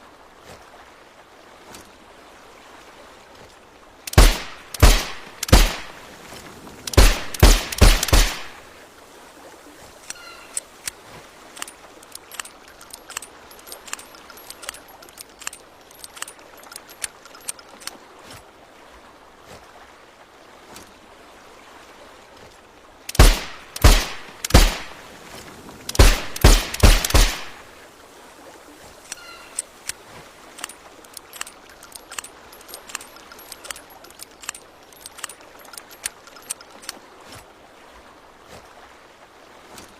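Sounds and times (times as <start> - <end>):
suppressed revolver shots: 4.1 - 5.9, 6.9 - 8.6, 23.1 - 25.0, 25.9 - 27.6
faint clicking: 10.0 - 18.0, 29.0 - 37.0.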